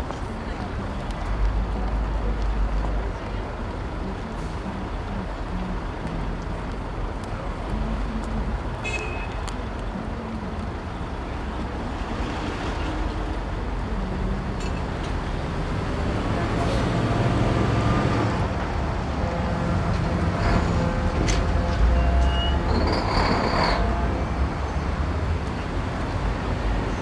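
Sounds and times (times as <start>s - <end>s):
street traffic rumble: 0.0s - 27.0s
short high horn toot: 19.1s - 24.2s.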